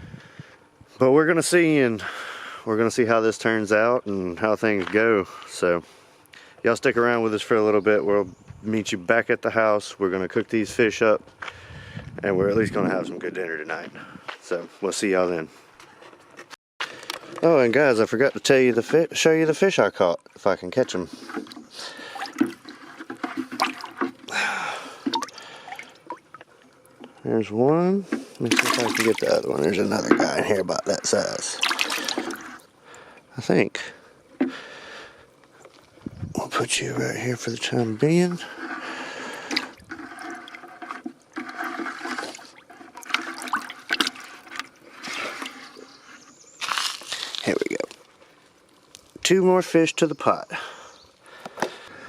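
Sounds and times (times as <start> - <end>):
water splashing in a bucket: 19.5 - 27.2, 28.2 - 33.4, 36.8 - 45.8.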